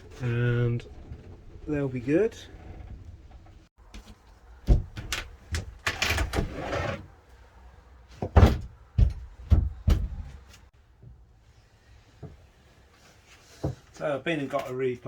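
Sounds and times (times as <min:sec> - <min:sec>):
sharp knocks and thuds: 0:03.9 - 0:05.7, 0:08.2 - 0:10.4.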